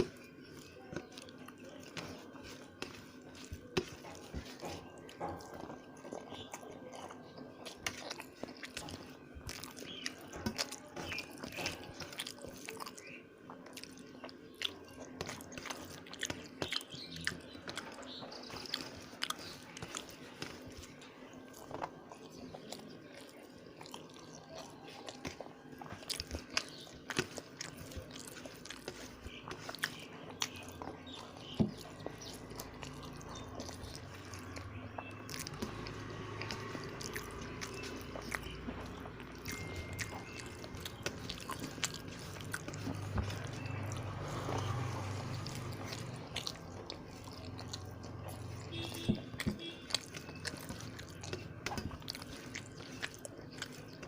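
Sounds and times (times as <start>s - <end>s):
person chewing food: 0.0s - 54.0s.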